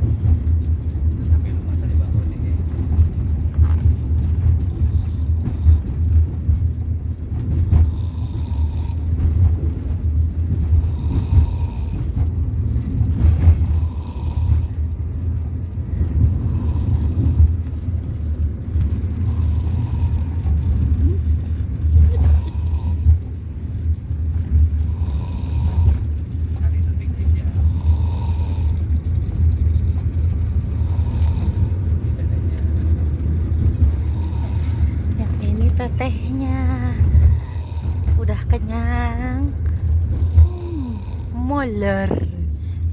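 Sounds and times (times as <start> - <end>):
low vehicle rumble: 0.0 - 42.9
child snoring: 4.6 - 6.2, 7.4 - 9.3, 10.4 - 12.3, 13.0 - 15.0, 16.2 - 17.8, 19.1 - 23.4, 24.8 - 26.2, 27.5 - 29.9, 30.6 - 32.6, 33.5 - 42.3.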